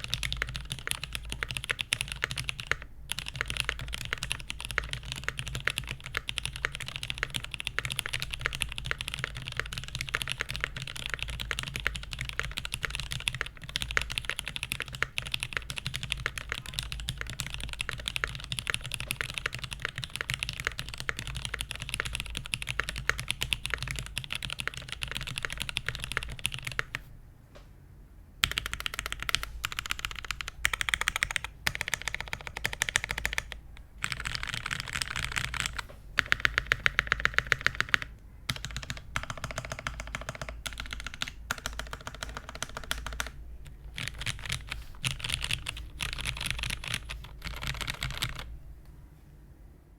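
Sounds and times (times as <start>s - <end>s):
typing on mechanical keyboard: 0.0s - 27.0s, 28.4s - 48.5s.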